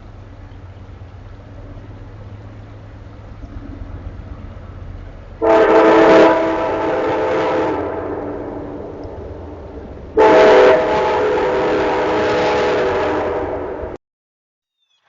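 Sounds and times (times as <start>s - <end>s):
train horn chord blast: 5.4s - 8.9s, 10.2s - 14.0s.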